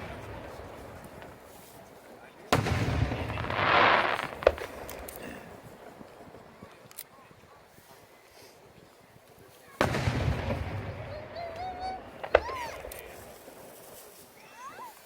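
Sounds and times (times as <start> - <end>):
sharp crack: 2.5 - 6.2, 9.8 - 14.2.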